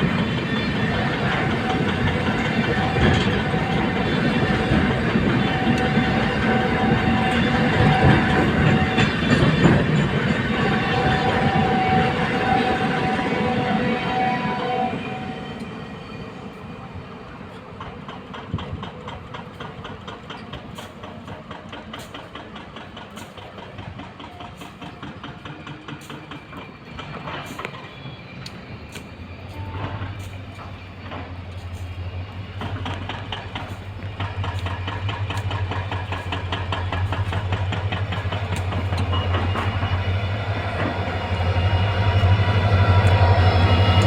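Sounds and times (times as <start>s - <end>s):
train wheels clicking over rail joints: 0.0s - 13.6s, 17.3s - 44.0s
locomotive deep hum: 28.4s - 44.0s.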